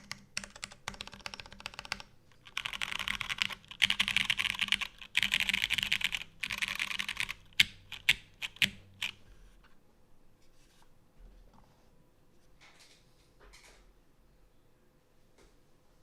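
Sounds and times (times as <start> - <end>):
mechanical keyboard typing: 0.0 - 9.2.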